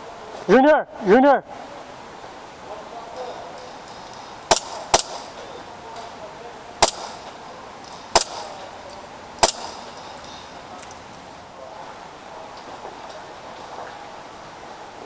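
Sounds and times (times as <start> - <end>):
airsoft pistol shots: 4.4 - 5.4, 6.8 - 8.7, 9.4 - 10.1.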